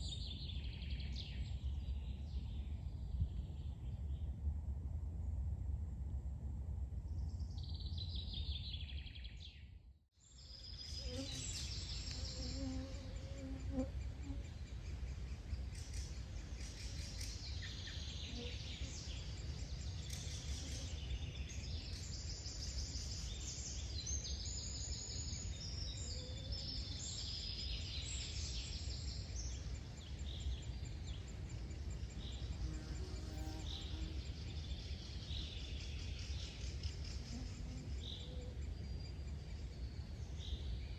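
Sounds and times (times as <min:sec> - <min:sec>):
steady low rumble: 0:01.4 - 0:08.9.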